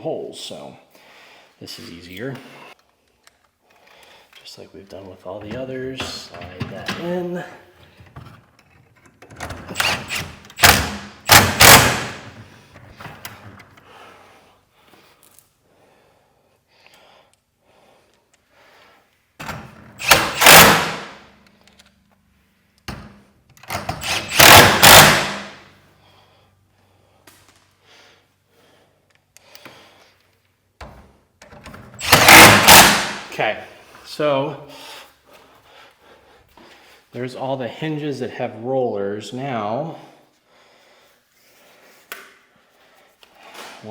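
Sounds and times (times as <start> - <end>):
impact wrench bursts: 9.7 - 12.7, 19.9 - 21.3, 23.7 - 25.7, 32.0 - 33.4.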